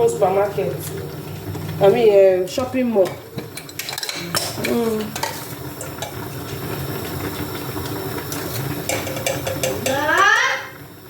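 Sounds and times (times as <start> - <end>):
food hissing in pot: 4.5 - 11.0
utensil clicking against pot: 8.3 - 10.5.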